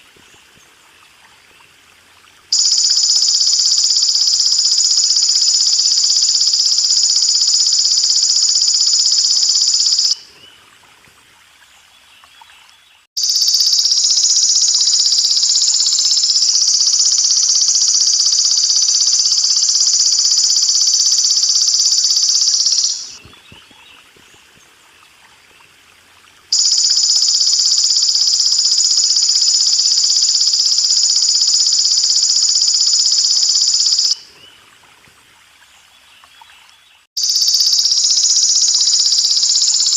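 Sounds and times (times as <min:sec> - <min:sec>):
water trickling: 0:00.0 - 0:03.0, 0:10.2 - 0:13.1, 0:23.2 - 0:27.0, 0:34.2 - 0:37.0
insect buzzing trill: 0:02.5 - 0:10.2, 0:13.2 - 0:23.2, 0:26.5 - 0:34.2, 0:37.2 - 0:39.9.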